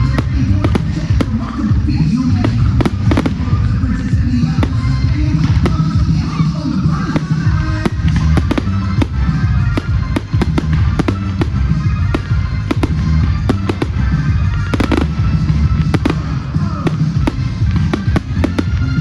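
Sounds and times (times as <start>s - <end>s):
fireworks bangs and crackles: 0.0s - 19.0s
music: 0.0s - 19.0s.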